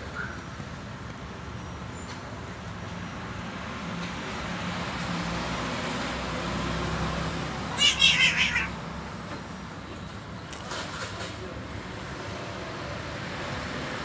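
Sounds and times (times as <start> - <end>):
steady background noise: 0.0 - 14.0
angry cat screeching: 7.7 - 8.8.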